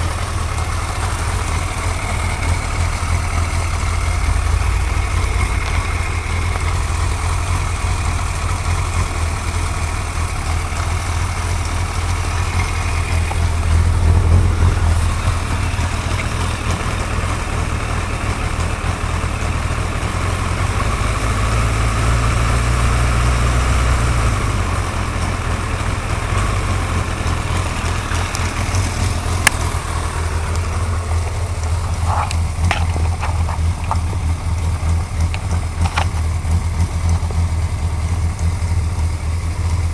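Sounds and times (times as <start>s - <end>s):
engine ticking: 0.0s - 39.9s
motorcycle engine idling: 0.0s - 39.9s.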